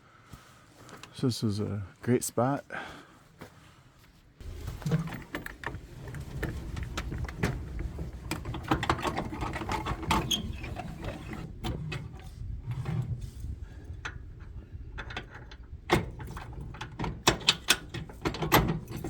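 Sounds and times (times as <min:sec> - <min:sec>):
trailer rattles and clunks: 0:04.4 - 0:19.0
truck engine low rumble: 0:04.4 - 0:19.0.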